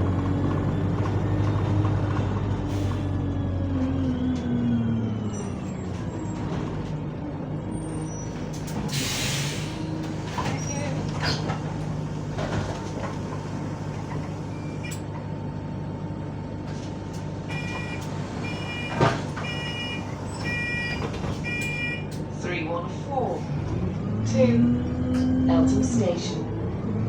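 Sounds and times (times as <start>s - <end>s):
bus engine idling: 0.0s - 27.0s
bus doors shutting thump: 16.7s - 22.3s
door warning beeping: 17.5s - 22.2s.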